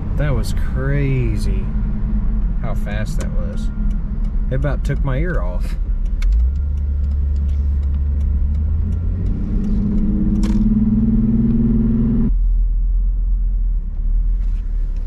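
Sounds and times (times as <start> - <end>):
engine note climbing: 0.0 - 12.4
car low rumble: 0.0 - 15.0.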